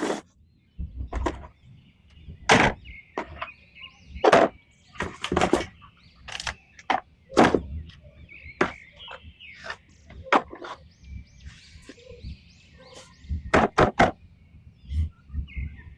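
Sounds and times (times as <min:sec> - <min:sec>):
faint high chirping: 0:00.7 - 0:13.5, 0:14.2 - 0:15.9
irregular knocks and thumps: 0:13.3 - 0:14.2.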